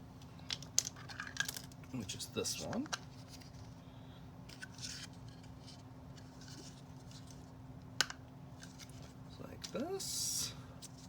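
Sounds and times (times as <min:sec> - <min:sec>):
plastic pieces clicking and rustling: 0:00.5 - 0:01.8.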